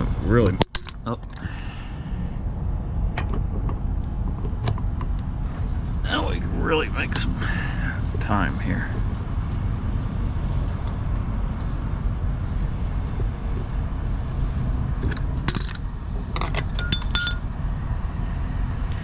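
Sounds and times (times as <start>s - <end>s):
steady low rumble: 0.0s - 19.0s
metal tools clinking: 0.5s - 1.4s, 15.1s - 15.8s, 16.4s - 17.4s.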